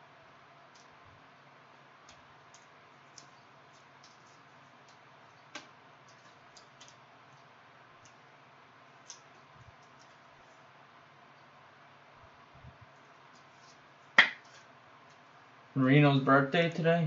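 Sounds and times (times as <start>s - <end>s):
low steady hiss: 0.0s - 17.0s
trading cards clicking: 2.1s - 8.2s.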